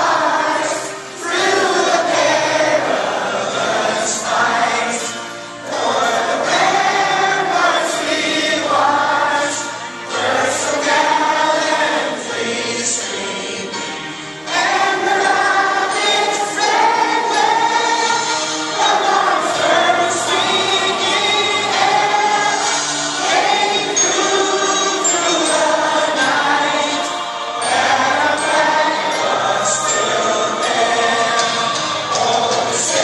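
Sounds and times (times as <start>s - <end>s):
choir singing: 0.0s - 33.0s
singers breathing: 14.0s - 14.5s.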